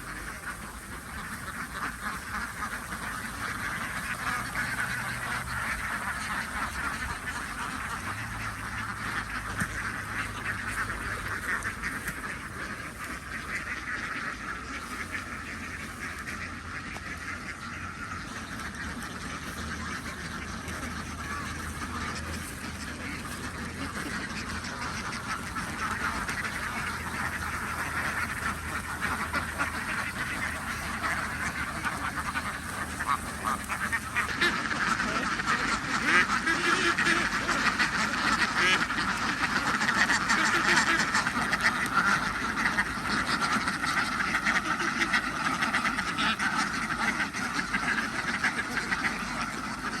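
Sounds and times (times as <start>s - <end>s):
ducks quacking: 0.0s - 50.0s.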